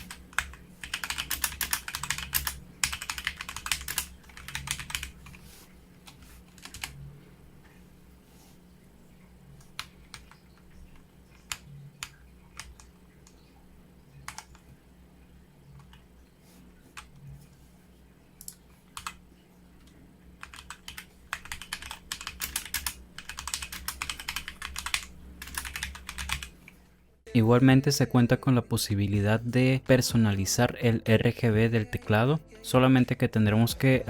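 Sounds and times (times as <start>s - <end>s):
mechanical keyboard typing: 0.0s - 5.4s, 6.1s - 7.0s, 14.2s - 14.6s, 18.4s - 19.2s, 20.4s - 26.5s.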